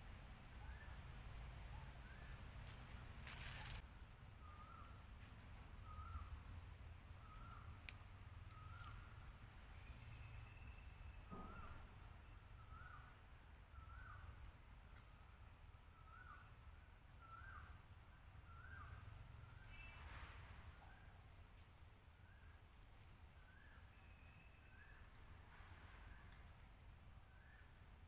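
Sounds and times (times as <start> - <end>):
rustle: 0.0 - 28.0
faint high chirps: 0.5 - 15.3, 22.2 - 26.6.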